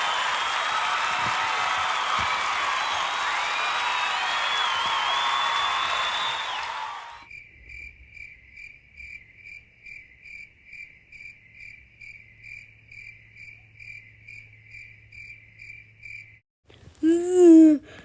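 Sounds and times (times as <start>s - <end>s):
cricket chirping: 7.3s - 16.4s.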